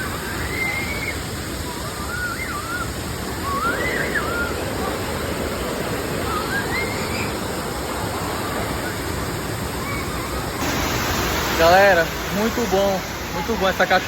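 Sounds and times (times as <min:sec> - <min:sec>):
waterfall rushing: 0:02.8 - 0:14.0.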